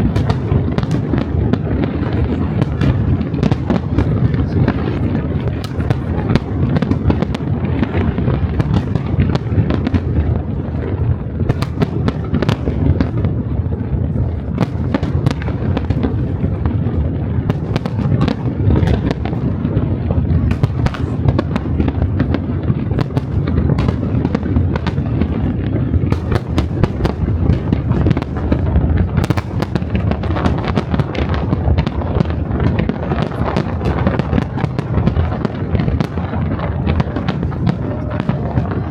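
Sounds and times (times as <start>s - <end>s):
fireworks bursting: 0.0s - 38.9s.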